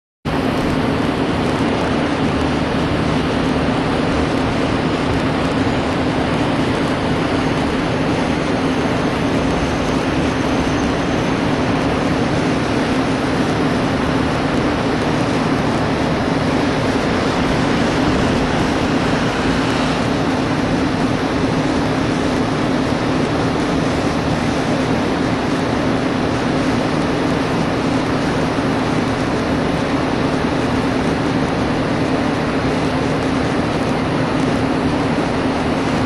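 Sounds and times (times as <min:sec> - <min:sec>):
car driving road noise: 0:00.4 - 0:25.6.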